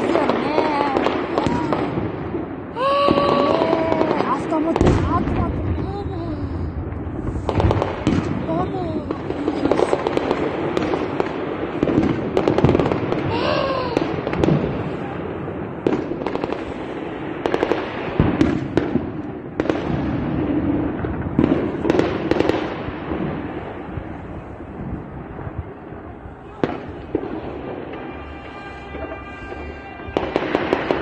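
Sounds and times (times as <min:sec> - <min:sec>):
busy city background: 0:00.0 - 0:31.0
person calling out: 0:02.8 - 0:04.3.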